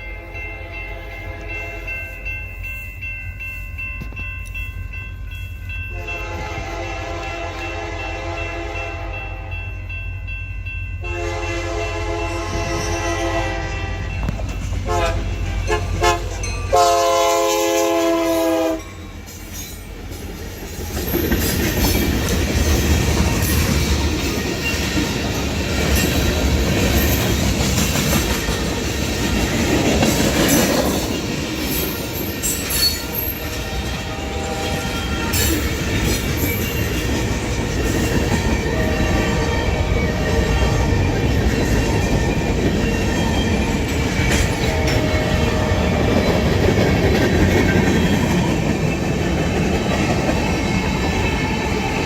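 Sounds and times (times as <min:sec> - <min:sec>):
freight train rumbling past: 0:00.0 - 0:52.0
train air horn: 0:05.9 - 0:09.6, 0:11.0 - 0:14.2, 0:14.8 - 0:18.9, 0:33.1 - 0:35.4.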